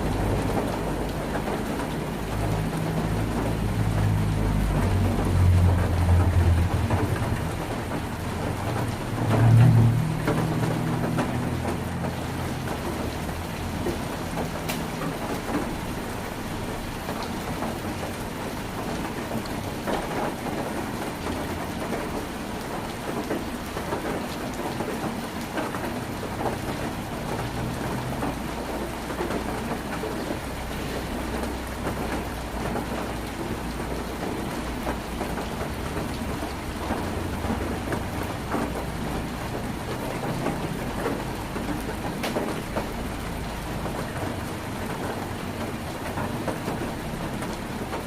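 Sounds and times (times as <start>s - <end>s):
heavy rain on a tin roof: 0.0s - 48.0s.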